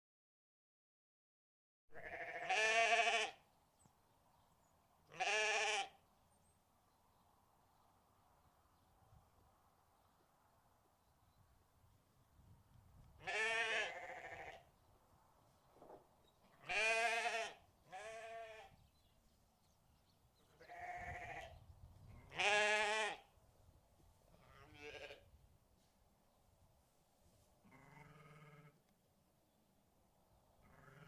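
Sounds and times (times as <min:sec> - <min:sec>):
livestock bleating: 0:01.9 - 0:03.4, 0:05.1 - 0:06.0, 0:13.2 - 0:14.7, 0:16.4 - 0:18.8, 0:20.5 - 0:21.6, 0:22.2 - 0:23.3, 0:24.3 - 0:25.3, 0:27.6 - 0:28.8, 0:30.6 - 0:31.0.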